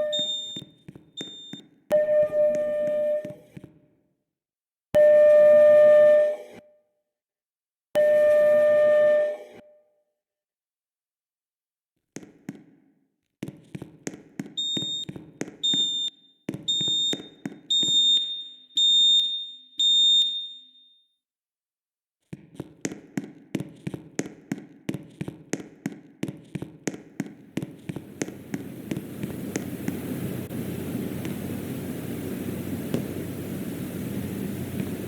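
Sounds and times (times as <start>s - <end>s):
high-pitched electronic beeps: 0.0s - 0.6s, 1.2s - 1.6s, 14.6s - 16.1s
fire alarm rapid clicking: 0.0s - 1.6s, 14.6s - 21.0s
low hum: 28.0s - 35.0s.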